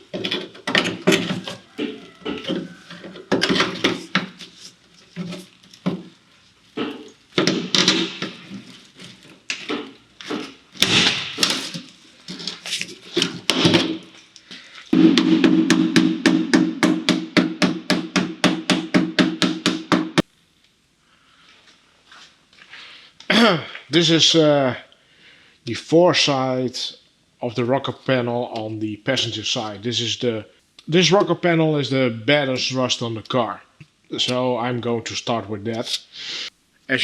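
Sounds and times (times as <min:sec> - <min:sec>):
hammer on sheet metal: 0:15.0 - 0:20.2.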